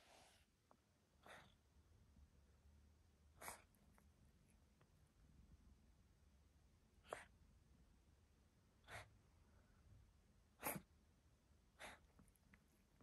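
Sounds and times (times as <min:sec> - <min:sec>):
cat sneezing: 0:03.4 - 0:03.7, 0:07.0 - 0:07.3, 0:10.6 - 0:10.9.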